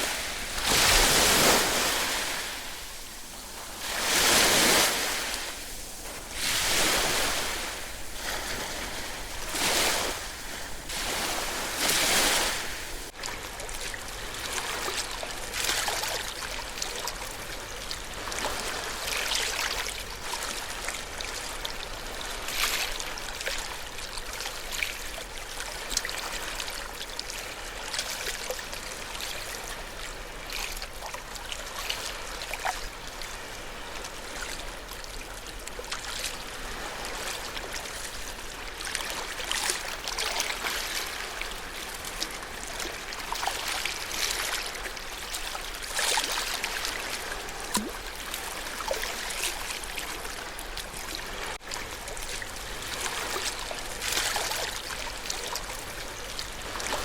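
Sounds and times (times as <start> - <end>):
ocean waves breaking: 0.0 - 13.2, 31.6 - 57.0.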